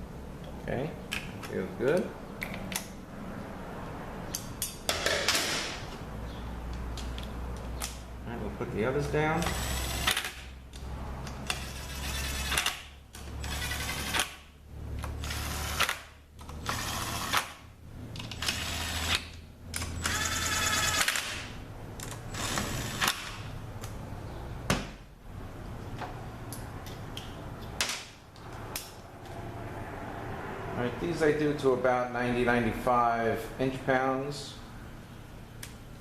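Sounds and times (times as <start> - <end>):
power driver whirring: 9.4 - 10.5, 18.2 - 23.5.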